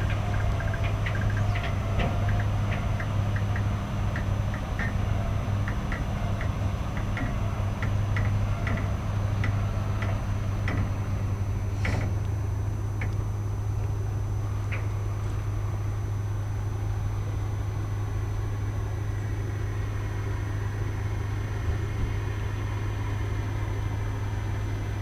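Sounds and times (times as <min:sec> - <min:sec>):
light ticks and clicks: 0:00.0 - 0:05.0, 0:05.6 - 0:11.0
large engine humming: 0:00.0 - 0:25.0.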